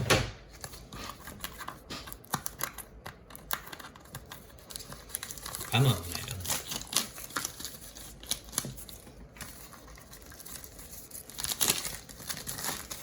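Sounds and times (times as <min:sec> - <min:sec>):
scissors cutting plastic: 0:01.1 - 0:13.0
plastic wrapper crinkling: 0:02.2 - 0:13.0.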